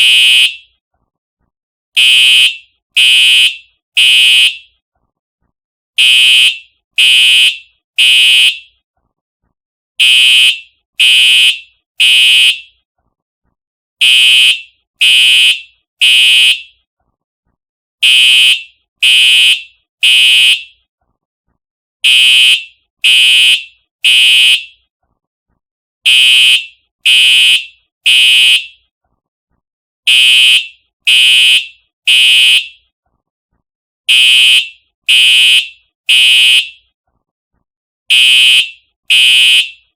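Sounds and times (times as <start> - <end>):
fire alarm horn blasts: 0.0 - 0.7, 2.0 - 4.7, 6.0 - 8.7, 10.0 - 12.7, 14.0 - 16.8, 18.0 - 20.8, 22.0 - 24.8, 26.1 - 28.8, 30.1 - 32.8, 34.1 - 36.9, 38.1 - 39.9.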